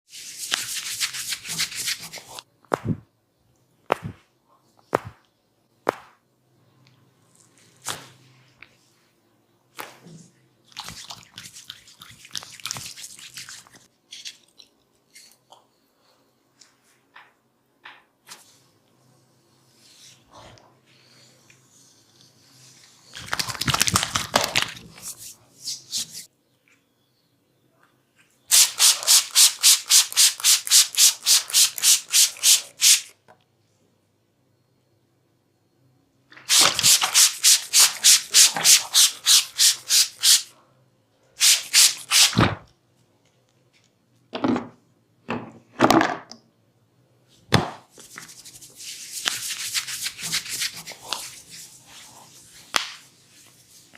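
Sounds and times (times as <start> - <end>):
hands rubbing in massage: 0.1 - 3.0, 47.9 - 53.9.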